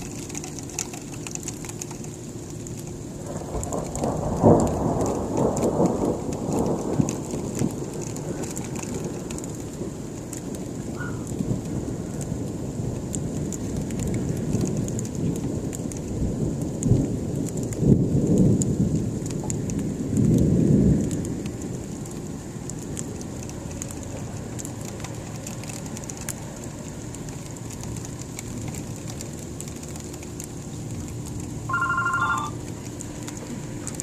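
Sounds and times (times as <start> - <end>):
freezing rain hissing and ticking: 0.0 - 34.0
thunder rumbling: 3.0 - 22.0.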